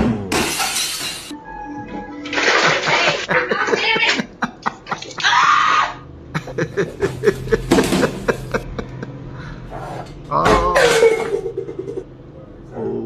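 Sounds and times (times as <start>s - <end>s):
person laughing and shrieking: 2.6s - 9.0s.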